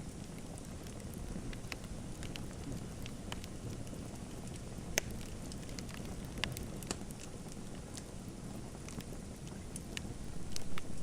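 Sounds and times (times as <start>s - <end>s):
wood fire crackling: 0.0s - 11.0s
sharp fire pops: 4.6s - 7.3s.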